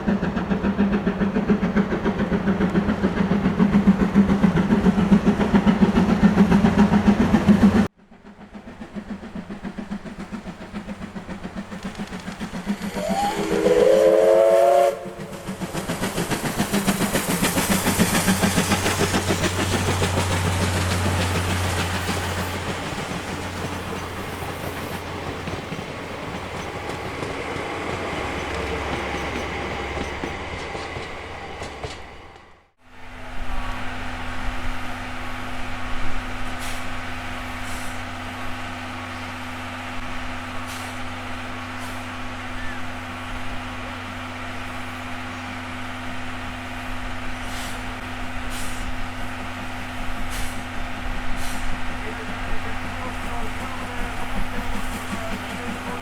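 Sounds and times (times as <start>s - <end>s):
train rhythmic clatter: 0.0s - 32.8s, 34.0s - 56.0s
steam locomotive whistle: 12.8s - 15.7s.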